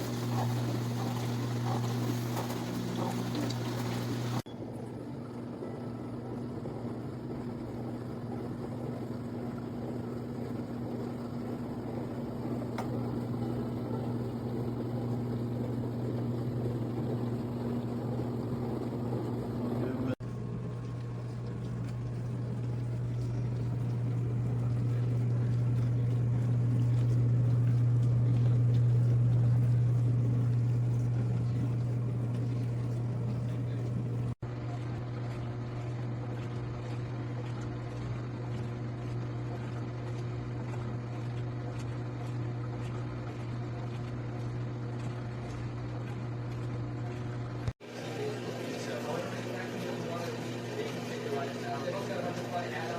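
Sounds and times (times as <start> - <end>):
water spraying and sloshing: 0.0 - 4.5, 19.8 - 52.9
dishwasher pump motor hum: 0.0 - 52.9.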